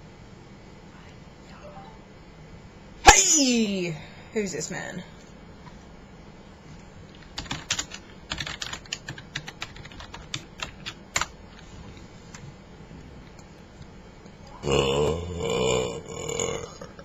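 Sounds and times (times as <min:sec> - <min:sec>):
low steady background noise: 0:00.0 - 0:17.0.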